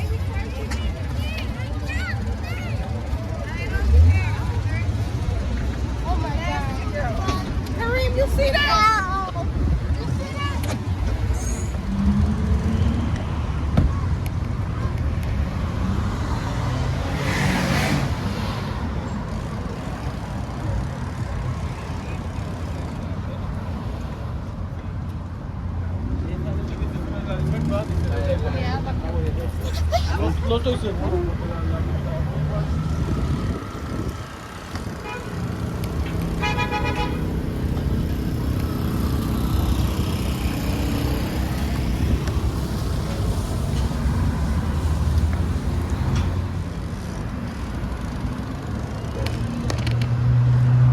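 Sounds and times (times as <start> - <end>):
traffic engine rumble: 0.0 - 50.9
vehicle passing close: 15.3 - 20.6
car horn toot: 36.4 - 37.3.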